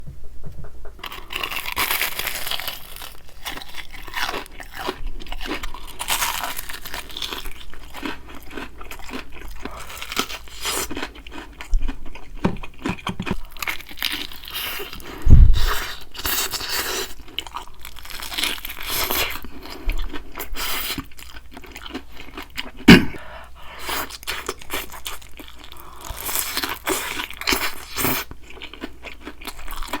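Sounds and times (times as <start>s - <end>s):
thumps: 0.0s - 1.1s, 12.4s - 13.4s
chewing and crunching food: 1.0s - 30.0s.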